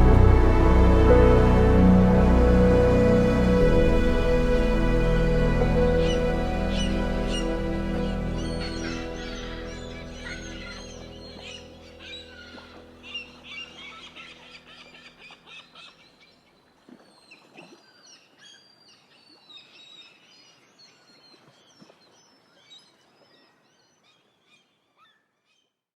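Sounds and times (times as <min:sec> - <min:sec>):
soft background music: 0:00.0 - 0:15.6
birds chirping: 0:05.1 - 0:16.4.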